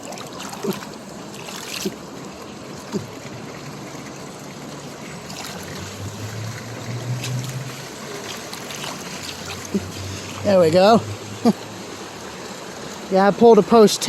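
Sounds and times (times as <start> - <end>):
floodwater rushing in creek: 0.0 - 14.0
water trickling: 0.0 - 14.0
low hum: 3.0 - 13.0.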